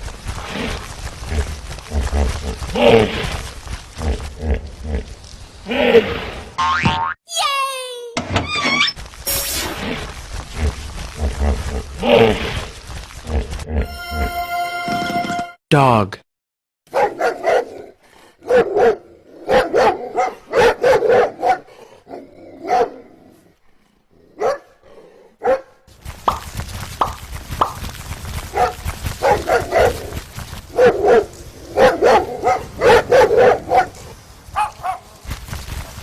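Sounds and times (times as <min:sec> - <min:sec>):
dog barking: 0:16.9 - 0:21.7, 0:22.6 - 0:23.0, 0:24.4 - 0:24.8, 0:25.4 - 0:25.8, 0:28.5 - 0:30.1, 0:30.7 - 0:34.0, 0:34.6 - 0:35.1.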